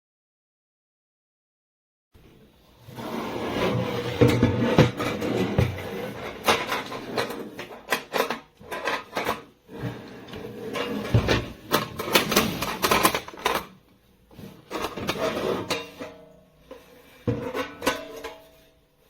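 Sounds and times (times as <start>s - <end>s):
roasting pan and rack clattering: 17.2s - 18.7s.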